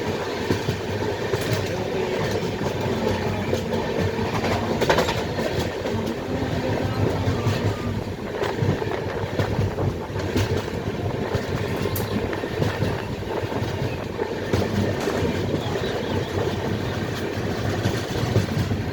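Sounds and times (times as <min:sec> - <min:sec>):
train rumble and rush: 0:00.0 - 0:18.9
wheels clicking over track: 0:00.0 - 0:18.9.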